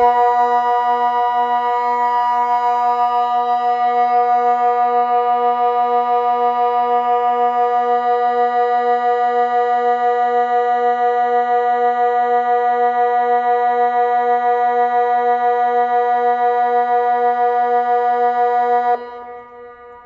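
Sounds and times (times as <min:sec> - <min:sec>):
siren long low tone: 0:00.0 - 0:15.2.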